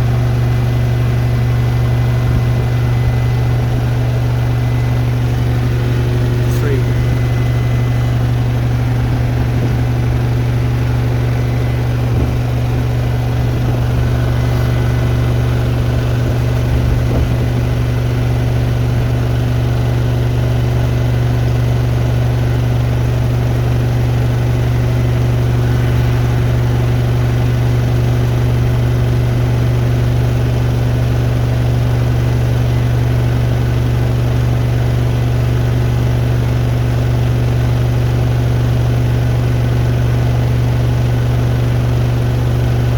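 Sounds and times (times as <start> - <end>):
washing machines spinning: 7.0 - 20.4, 22.8 - 32.1.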